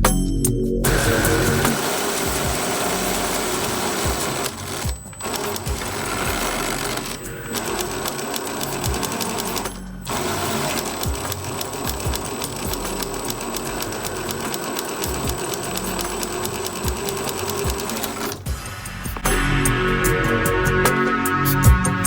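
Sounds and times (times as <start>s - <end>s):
drivetrain clicking: 0.9s - 18.5s
electric motor whirring: 0.9s - 18.6s.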